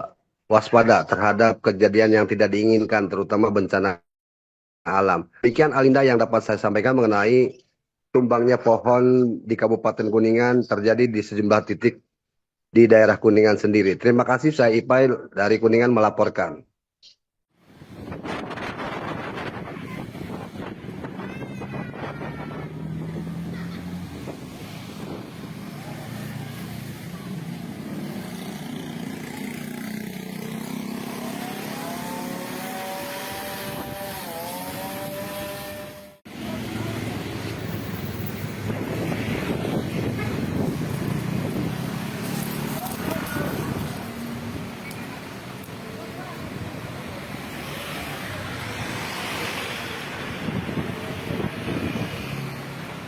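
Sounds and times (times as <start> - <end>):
rush of wind: 17.6 - 28.9, 33.3 - 34.2, 36.3 - 53.0.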